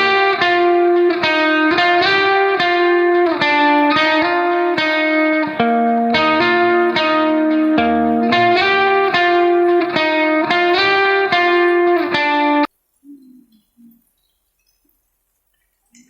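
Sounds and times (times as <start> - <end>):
guitar melody: 0.0 - 12.7.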